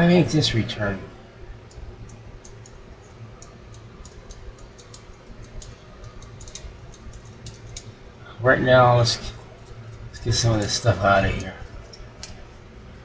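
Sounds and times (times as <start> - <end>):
low steady hum: 0.0 - 13.0
light clicks of tape mechanism: 1.7 - 8.0, 9.6 - 12.6.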